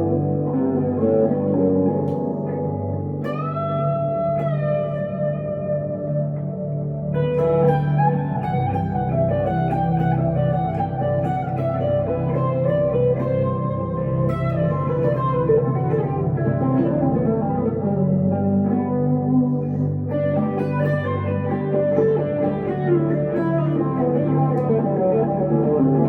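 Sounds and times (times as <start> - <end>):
electric guitar playing notes: 0.0 - 26.0.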